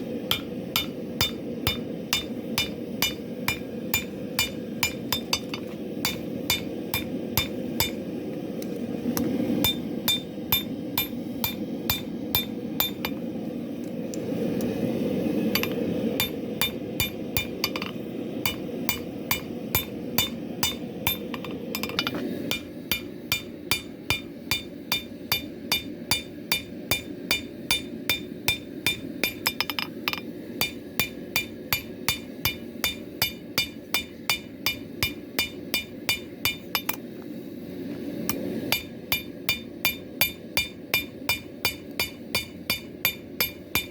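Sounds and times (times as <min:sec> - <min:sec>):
hammer blows on steel anvil: 0:00.3 - 0:08.0.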